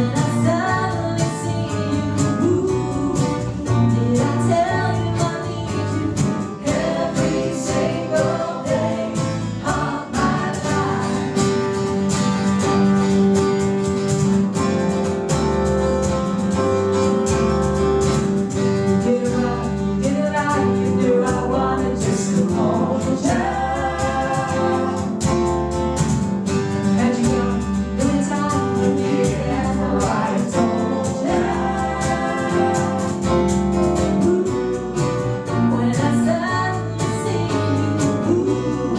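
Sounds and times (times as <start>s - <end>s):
voices singing together: 0.0s - 11.9s, 19.0s - 25.5s, 27.0s - 38.9s
bass line: 0.0s - 38.9s
guitar: 0.0s - 38.9s.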